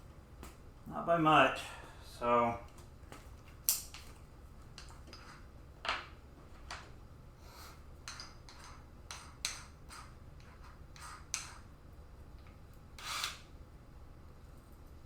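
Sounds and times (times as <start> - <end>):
screwdriver turning screw: 13.0 - 13.4.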